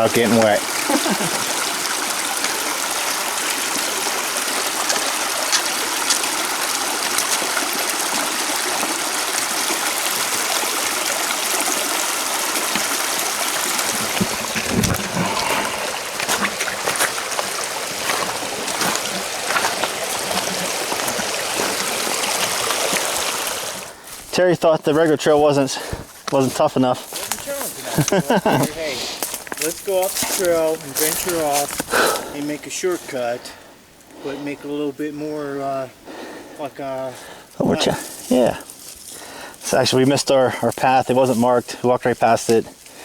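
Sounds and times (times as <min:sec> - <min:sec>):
creek water rushing: 0:00.0 - 0:43.0
short splashes: 0:12.6 - 0:24.0.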